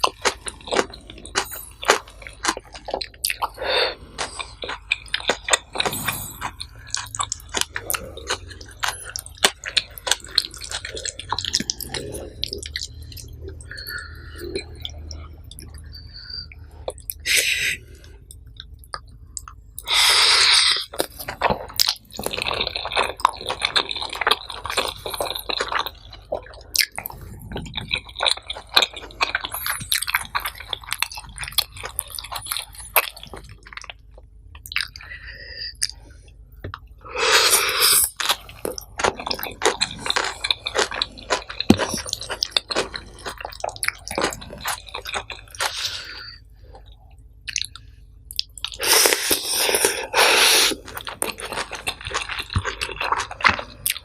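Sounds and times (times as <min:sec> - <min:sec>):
person chewing food: 0:00.0 - 0:54.0.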